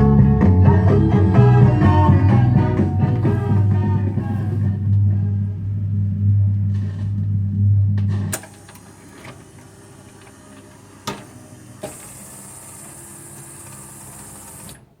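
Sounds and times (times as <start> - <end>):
jukebox song: 0.0 - 9.0
record changer whirring: 0.5 - 15.0
record changer clicks: 1.3 - 15.0.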